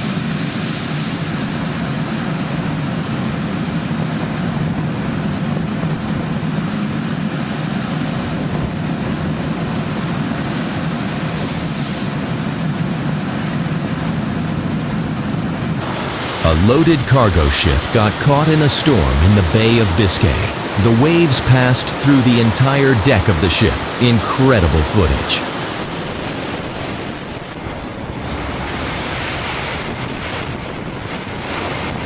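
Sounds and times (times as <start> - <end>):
wind and water rushing: 15.2 - 32.0.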